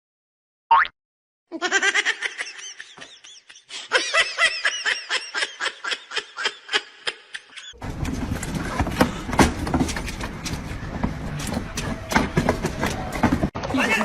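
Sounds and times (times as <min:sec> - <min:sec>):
person laughing hard: 0:01.6 - 0:07.8.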